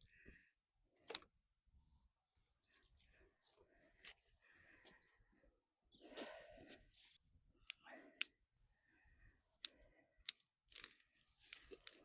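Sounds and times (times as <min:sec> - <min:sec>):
dry seed heads rustling: 0:09.6 - 0:12.0.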